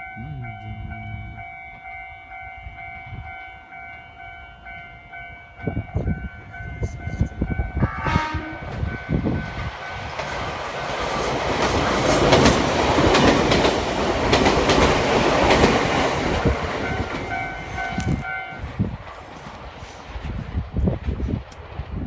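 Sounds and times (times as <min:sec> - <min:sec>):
level crossing warning bell: 0:00.0 - 0:10.2, 0:16.8 - 0:18.7
train wheels rumbling on rails: 0:02.6 - 0:22.0
wheels clacking over rail joints: 0:09.4 - 0:19.6.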